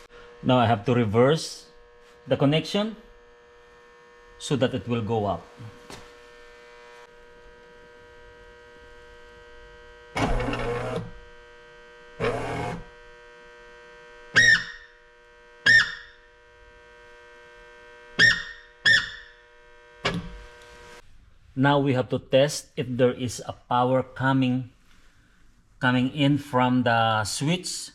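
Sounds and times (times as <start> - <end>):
power window motor running: 6.1 - 14.4.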